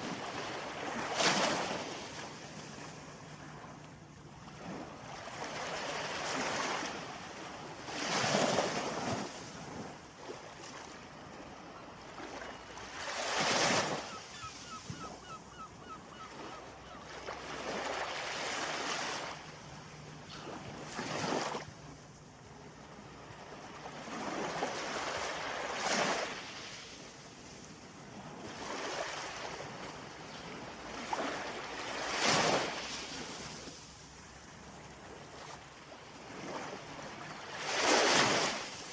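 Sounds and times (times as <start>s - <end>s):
waves breaking: 17.2s - 22.0s.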